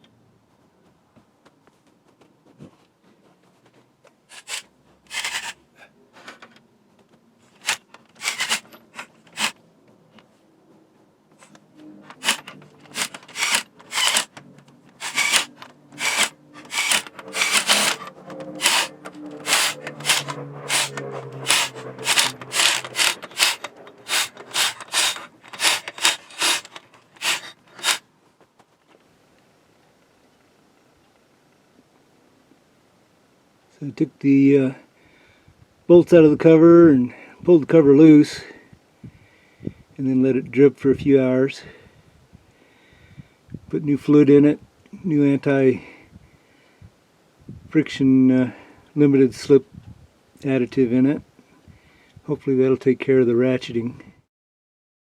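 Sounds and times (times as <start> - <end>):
hand scraping: 4.3 - 5.6, 7.5 - 9.6, 12.1 - 28.0.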